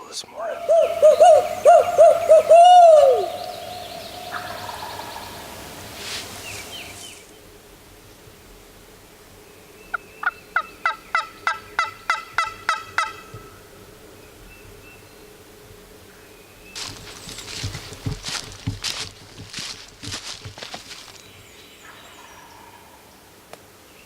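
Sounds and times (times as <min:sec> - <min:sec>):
turkey yelps: 0:00.4 - 0:05.5
owl-style hoot call: 0:00.4 - 0:06.0.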